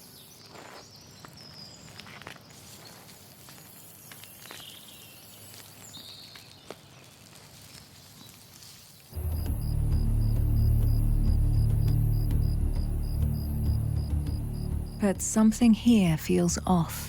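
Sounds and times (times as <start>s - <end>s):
soft rustles and ticks: 0.4s - 9.2s.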